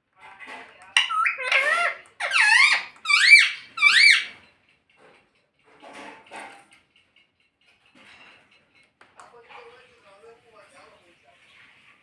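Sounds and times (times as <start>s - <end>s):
parakeet shrill calls: 1.0s - 4.4s.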